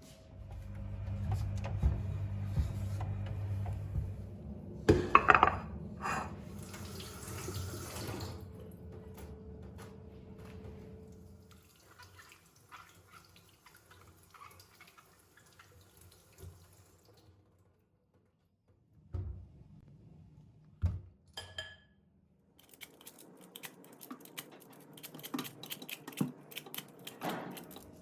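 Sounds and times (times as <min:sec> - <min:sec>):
tap water running into sink: 0:06.6 - 0:08.4, 0:11.4 - 0:17.2.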